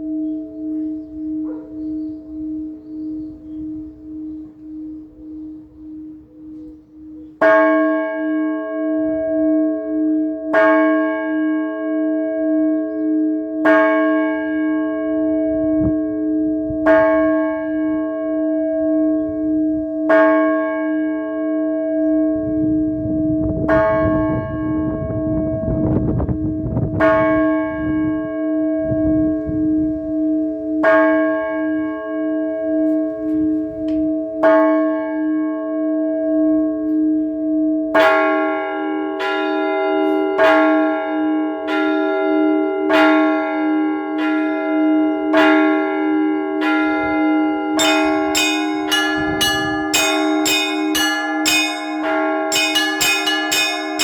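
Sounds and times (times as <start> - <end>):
church bell tolling: 0.0 - 54.0
low rumbling noise: 22.2 - 30.7, 47.8 - 52.0
bells chiming: 46.6 - 54.0.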